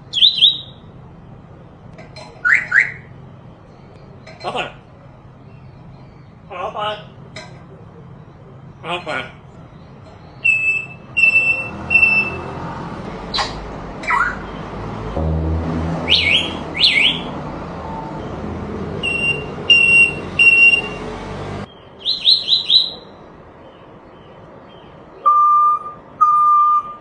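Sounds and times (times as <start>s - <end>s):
parrot mimicking electronic beeps: 10.4s - 12.4s.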